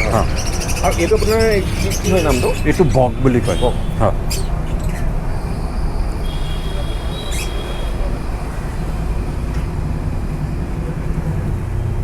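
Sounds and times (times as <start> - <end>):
bird chirp: 0.0 - 9.0
road traffic rumble: 0.0 - 12.0.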